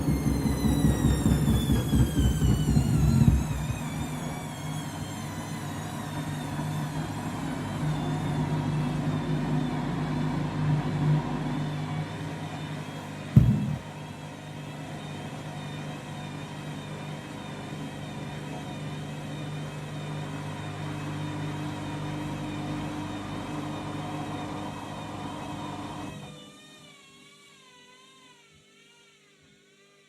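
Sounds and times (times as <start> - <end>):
washing machine drum spinning: 0.0 - 8.5, 13.4 - 14.0
washing machine thump: 13.4 - 13.9.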